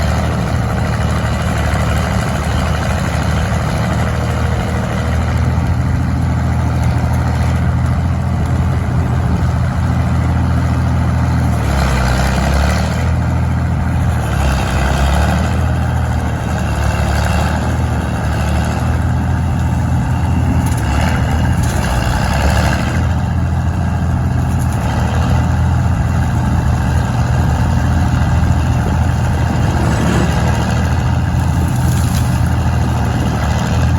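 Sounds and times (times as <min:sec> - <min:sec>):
tractor diesel engine running: 0:00.0 - 0:33.9
tree saw cutting wood: 0:28.8 - 0:33.8.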